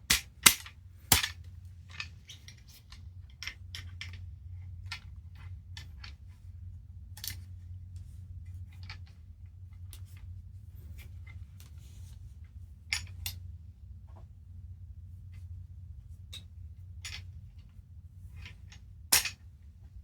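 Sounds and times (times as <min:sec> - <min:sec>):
steady low hum: 0:00.0 - 0:20.0
metallic clicks of rifle parts: 0:07.2 - 0:07.5.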